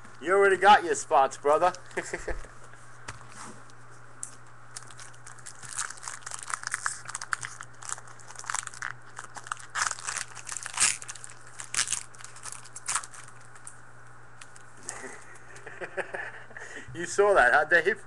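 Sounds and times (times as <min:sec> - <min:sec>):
steady low hum: 0:00.0 - 0:18.0
wrapper tearing and crinkling: 0:04.7 - 0:13.7.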